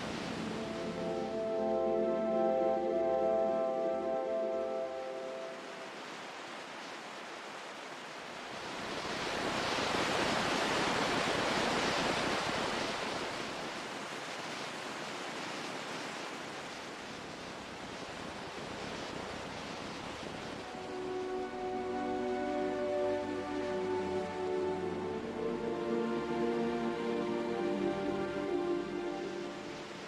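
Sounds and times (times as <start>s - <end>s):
ocean waves washing: 0.0s - 30.0s.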